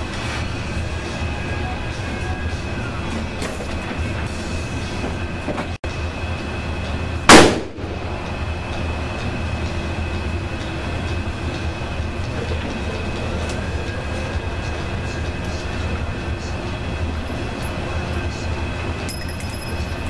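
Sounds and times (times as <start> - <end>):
loud gunshot: 7.3 - 7.8.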